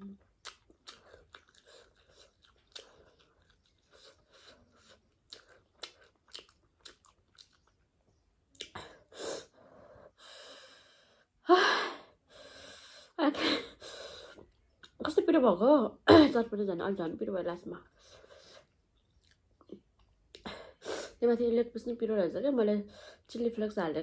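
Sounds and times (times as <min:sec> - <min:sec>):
crunchy chewing: 0:00.2 - 0:07.9.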